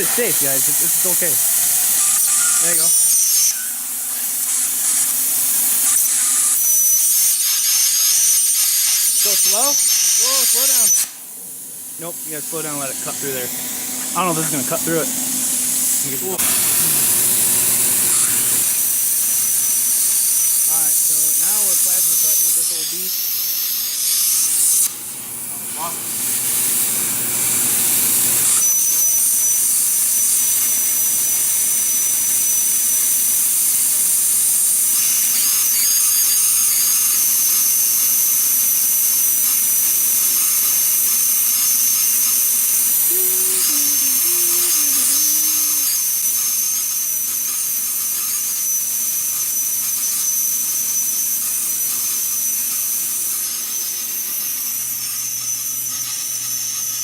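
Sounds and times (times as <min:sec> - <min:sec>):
plasma cutter hissing: 0:00.0 - 0:57.0
high whine: 0:36.6 - 0:56.0.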